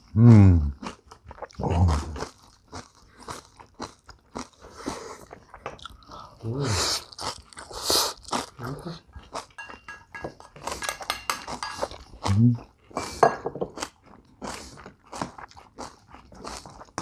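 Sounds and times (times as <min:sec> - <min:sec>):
chewing crunchy food: 0:00.0 - 0:09.6, 0:12.0 - 0:17.0
hissing mouth sounds: 0:06.5 - 0:08.9.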